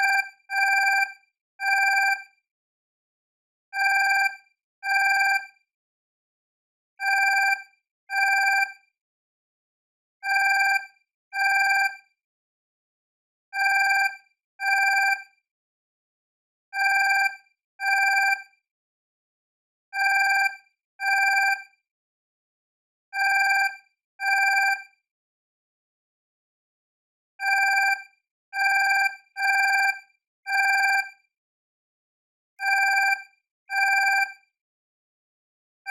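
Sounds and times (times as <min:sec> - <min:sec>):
alarm clock electronic beeps: 0:00.0 - 0:02.3, 0:07.0 - 0:08.8, 0:13.6 - 0:15.3, 0:16.8 - 0:18.4, 0:21.0 - 0:21.6, 0:23.2 - 0:24.8, 0:27.4 - 0:28.0, 0:28.6 - 0:31.0, 0:32.6 - 0:34.4.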